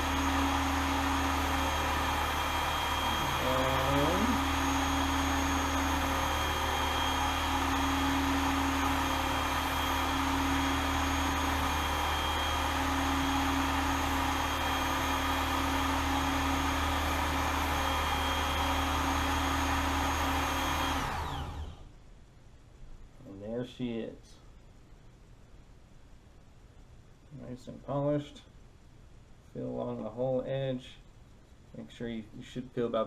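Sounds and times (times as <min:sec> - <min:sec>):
belt sharpener motor humming: 0:00.0 - 0:21.8
sanding belt whirring: 0:00.0 - 0:21.8.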